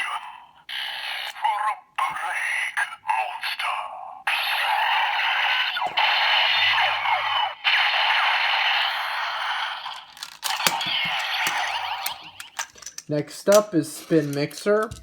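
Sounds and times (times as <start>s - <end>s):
toy electronic sound effect: 4.3s - 13.0s
toy being handled clicks: 9.9s - 15.0s.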